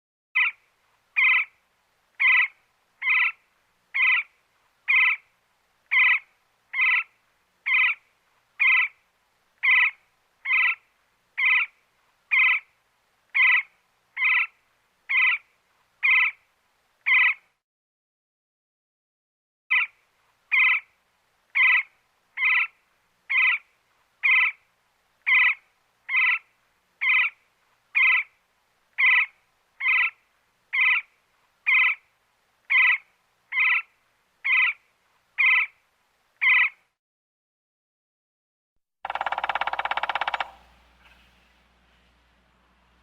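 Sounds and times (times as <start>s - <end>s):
woodpecker calling: 1.2s - 1.5s, 2.2s - 3.4s, 6.8s - 7.1s, 9.6s - 10.8s, 25.3s - 26.4s, 29.0s - 30.2s, 32.7s - 34.8s, 35.4s - 35.7s, 36.4s - 36.8s, 39.0s - 41.3s.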